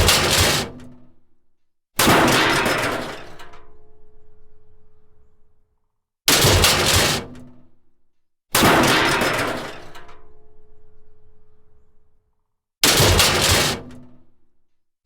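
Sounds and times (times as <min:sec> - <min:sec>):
loud metal crashes: 0:00.0 - 0:00.7, 0:02.0 - 0:03.4, 0:08.6 - 0:10.0, 0:12.8 - 0:13.9.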